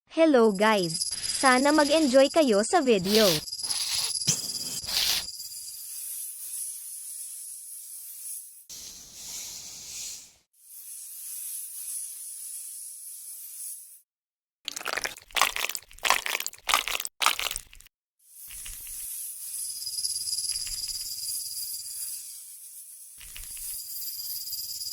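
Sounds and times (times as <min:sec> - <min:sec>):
crisp crunching and crackling: 0:03.0 - 0:05.3, 0:14.8 - 0:17.8.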